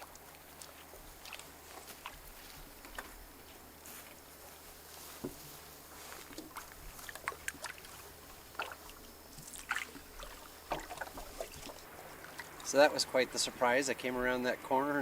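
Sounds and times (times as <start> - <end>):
paddle dipping and dripping water: 0.0 - 13.0
short splashes: 6.4 - 12.8.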